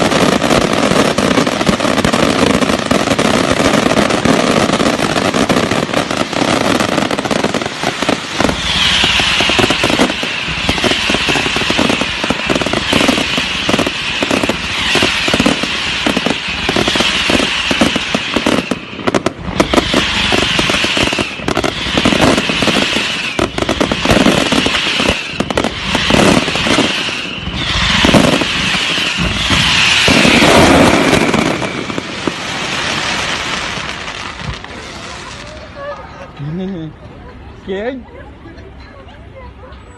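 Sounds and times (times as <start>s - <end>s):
crackling hiss: 0.0s - 35.8s
fireworks bangs and crackling: 0.0s - 36.4s.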